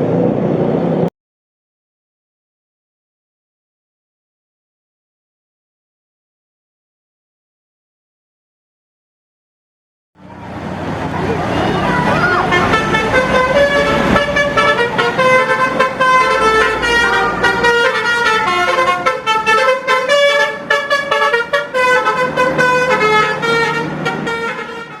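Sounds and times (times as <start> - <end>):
bus musical horn melody: 10.2 - 25.0.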